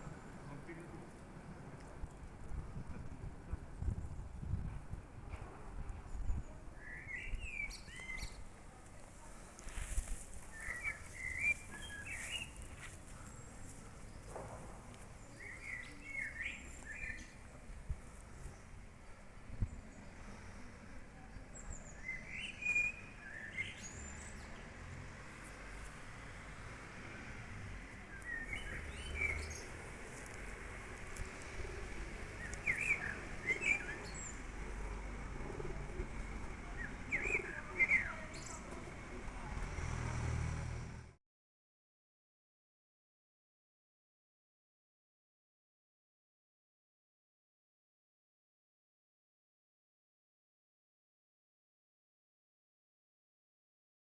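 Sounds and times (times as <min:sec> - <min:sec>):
faint outdoor background noise: 0:00.0 - 0:41.2
songbird chirping: 0:06.4 - 0:20.2, 0:21.2 - 0:24.8, 0:27.6 - 0:35.1, 0:36.1 - 0:40.0.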